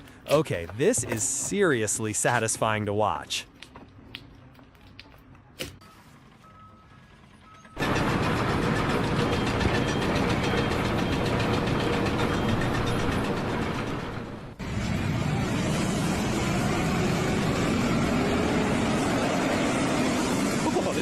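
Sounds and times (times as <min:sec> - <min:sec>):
engine-driven machinery running: 0:07.3 - 0:21.0
steady machine noise: 0:07.8 - 0:21.0.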